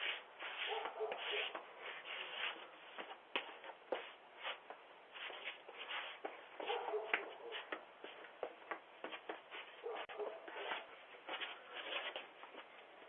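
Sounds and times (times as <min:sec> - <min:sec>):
scuffing and rustling: 0:00.0 - 0:13.0.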